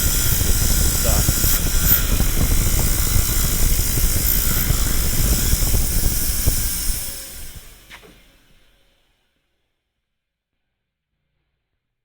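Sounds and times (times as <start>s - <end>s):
wire wheel grinding rust: 0.0s - 8.0s.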